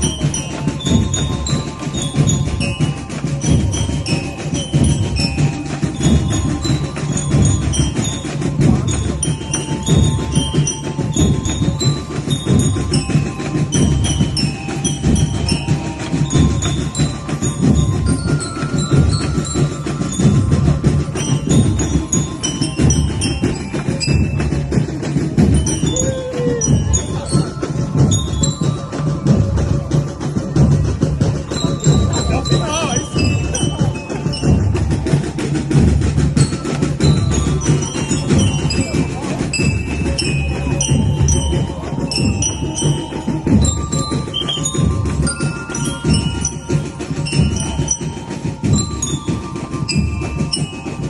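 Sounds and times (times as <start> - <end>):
band music with driving beat: 0.0 - 51.0.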